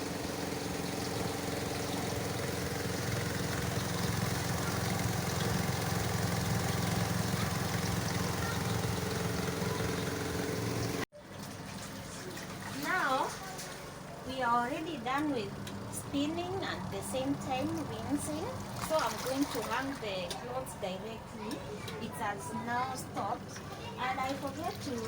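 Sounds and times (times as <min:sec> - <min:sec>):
washing machine motor hum: 0:00.0 - 0:25.0.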